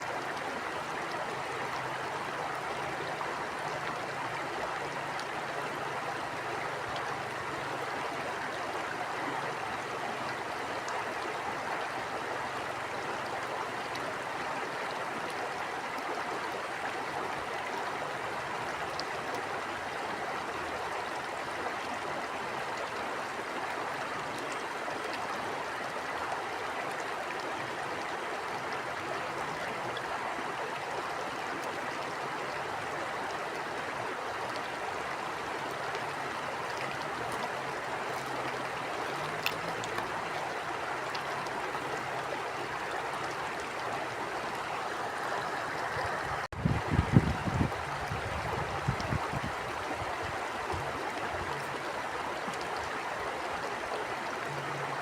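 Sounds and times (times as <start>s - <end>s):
stream water running: 0.0s - 55.0s.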